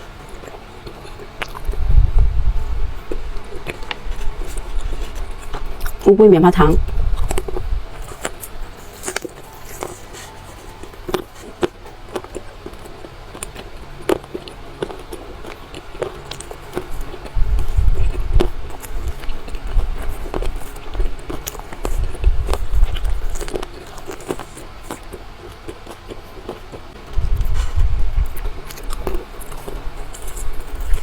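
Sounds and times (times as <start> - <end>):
biting and chewing marshmallow: 0.0 - 31.0.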